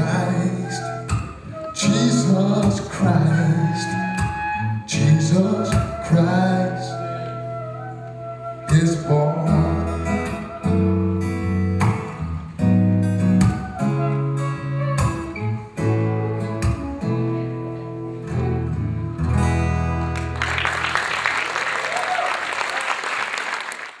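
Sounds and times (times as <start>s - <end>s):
audience applause: 20.0s - 24.0s.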